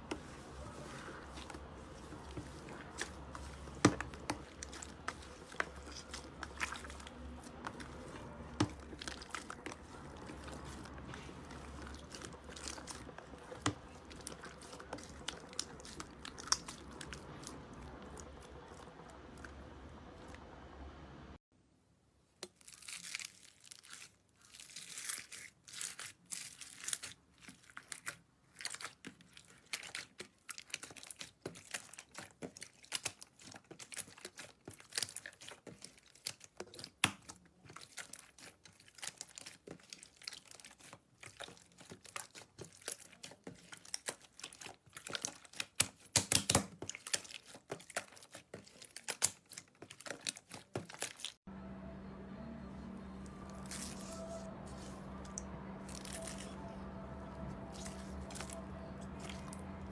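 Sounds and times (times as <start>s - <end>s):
slime crackling and popping: 22.4s - 51.4s.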